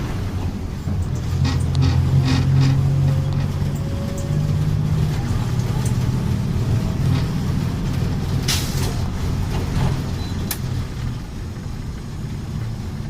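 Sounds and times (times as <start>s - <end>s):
bus engine rumbling: 0.0s - 13.0s.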